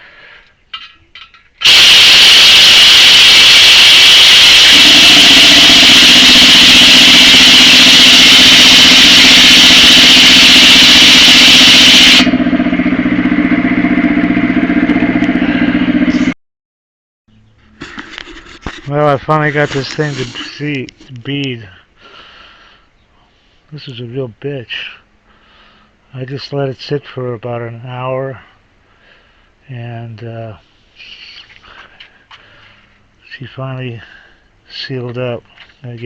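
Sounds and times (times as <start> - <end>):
compressed air rushing into tire: 1.6 - 12.4
steady motor hum: 1.6 - 16.4.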